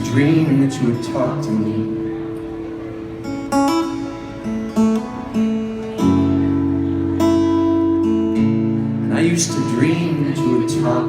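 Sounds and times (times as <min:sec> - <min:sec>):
acoustic guitar strumming: 0:00.0 - 0:11.0.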